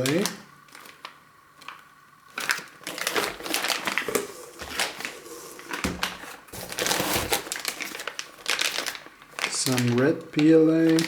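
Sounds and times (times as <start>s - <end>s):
plastic wrap crinkling: 0.0s - 11.0s
boxes clicking and knocking: 3.0s - 8.9s.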